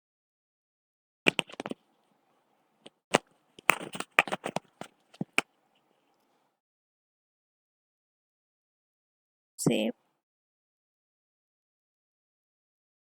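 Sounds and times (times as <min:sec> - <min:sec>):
computer keyboard typing: 0:01.3 - 0:01.8, 0:03.6 - 0:05.4.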